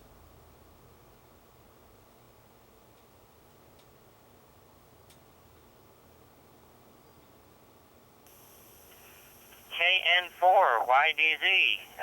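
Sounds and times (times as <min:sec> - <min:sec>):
faint steady hiss: 0:04.9 - 0:12.0.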